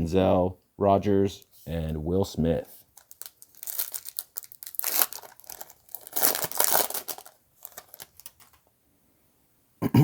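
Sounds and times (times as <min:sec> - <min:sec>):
plastic wrapper tearing and crinkling: 0:02.8 - 0:08.6.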